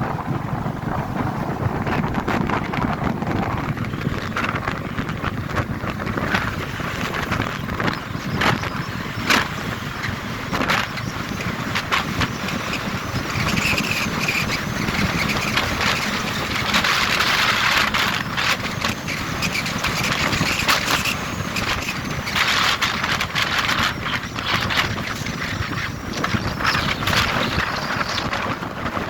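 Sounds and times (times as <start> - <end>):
motorcycle road noise: 0.0 - 29.0
wind buffeting microphone: 0.0 - 29.0.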